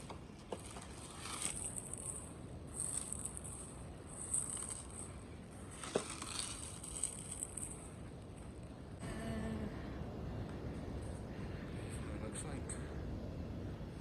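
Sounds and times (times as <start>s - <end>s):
plastic rustling and crinkling: 0.0s - 8.1s.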